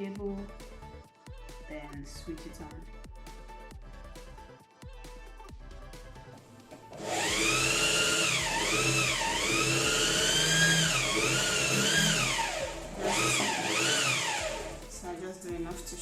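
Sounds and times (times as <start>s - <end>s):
sewing machine motor whining: 6.9s - 14.9s.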